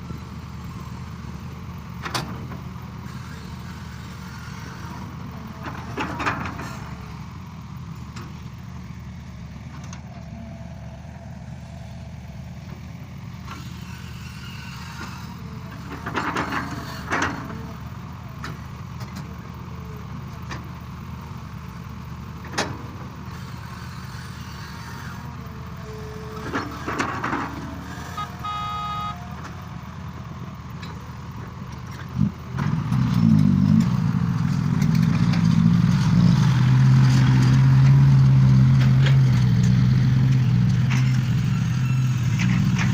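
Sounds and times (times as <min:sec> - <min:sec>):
excavator diesel engine: 0:00.0 - 0:42.9
knocks and clanks: 0:26.4 - 0:28.4
brief high tone: 0:28.0 - 0:29.6.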